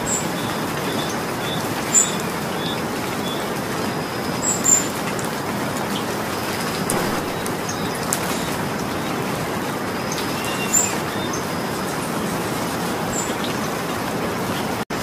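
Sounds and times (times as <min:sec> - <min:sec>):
rain falling: 0:00.0 - 0:15.0
high bird chirps: 0:06.9 - 0:08.5.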